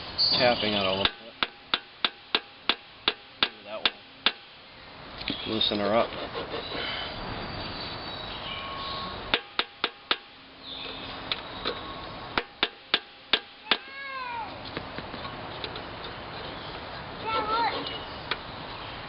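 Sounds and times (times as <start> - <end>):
sharp taps on metal flywheel: 1.0 - 4.4, 9.3 - 10.3.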